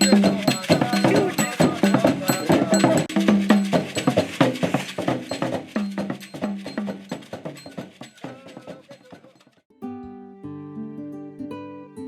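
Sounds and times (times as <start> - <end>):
music with quick percussion: 0.0 - 9.6.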